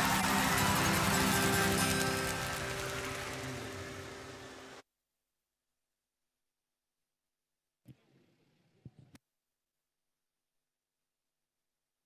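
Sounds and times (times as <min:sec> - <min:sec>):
crowd applause and cheering: 0:00.0 - 0:04.8.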